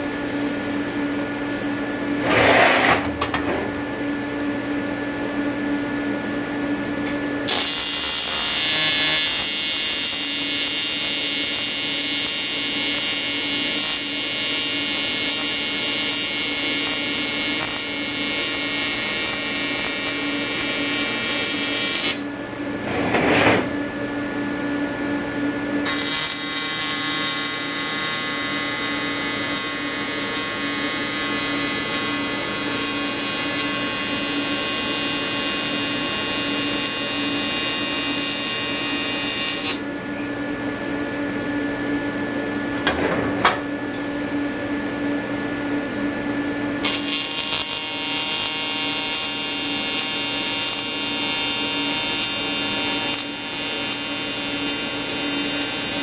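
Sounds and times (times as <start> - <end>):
welding arc buzzing: 7.4 - 22.3, 25.8 - 39.9, 46.8 - 56.0.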